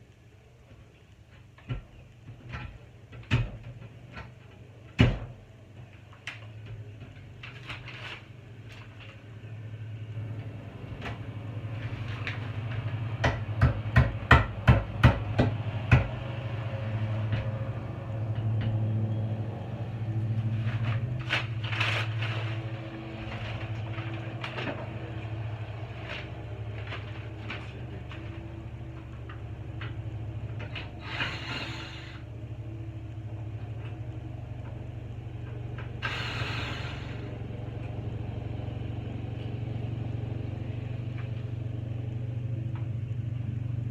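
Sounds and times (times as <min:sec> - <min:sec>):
low steady hum: 0:00.0 - 0:43.9
sharp knocks and taps: 0:13.2 - 0:16.2.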